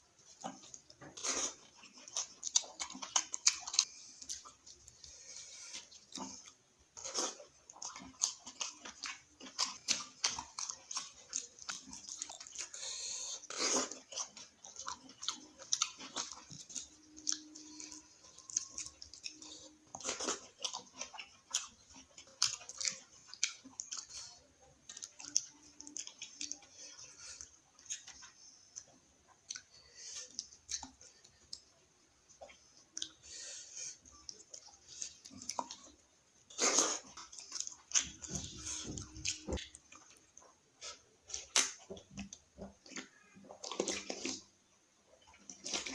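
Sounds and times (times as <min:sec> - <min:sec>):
person chewing food: 0:00.0 - 0:45.9.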